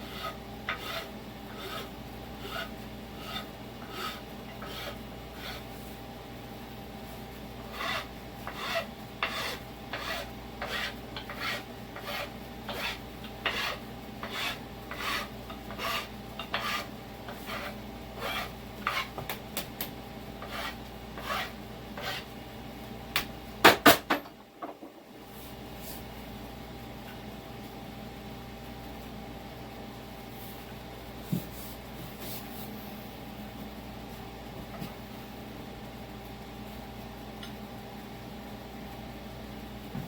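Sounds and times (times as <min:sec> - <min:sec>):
file rasping on axe head: 0:00.0 - 0:05.7, 0:07.6 - 0:19.2, 0:20.4 - 0:22.3.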